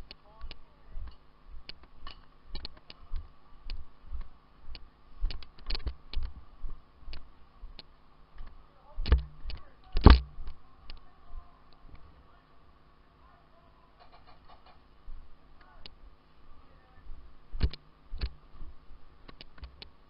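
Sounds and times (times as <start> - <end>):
loud thumps: 9.1 - 10.5.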